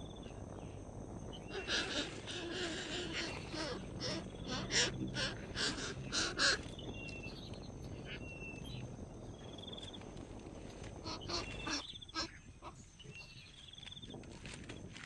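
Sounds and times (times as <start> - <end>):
bird squawks: 1.3 - 8.8, 11.0 - 12.8.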